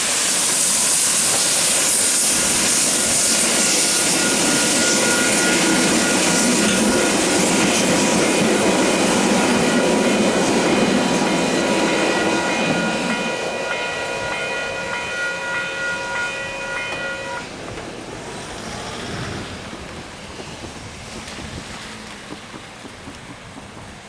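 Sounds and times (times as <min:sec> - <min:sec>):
steam train rumbling past: 0:00.0 - 0:24.0
level crossing warning bells: 0:03.5 - 0:17.6.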